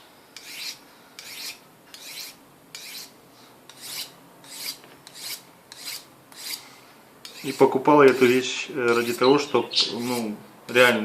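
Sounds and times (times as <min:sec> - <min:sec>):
knife scraping through sharpener: 0:00.4 - 0:03.1, 0:03.7 - 0:06.6, 0:07.3 - 0:08.3, 0:08.9 - 0:10.3.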